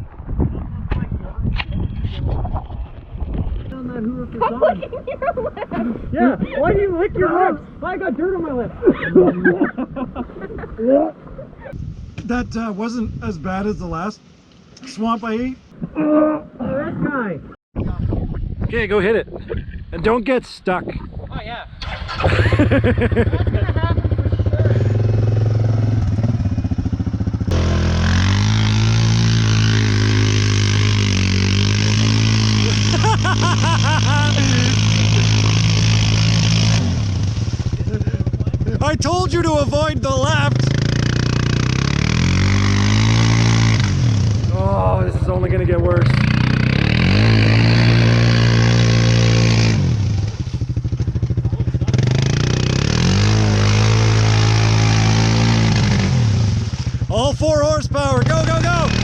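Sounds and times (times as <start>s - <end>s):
quad engine running: 21.8s - 59.0s.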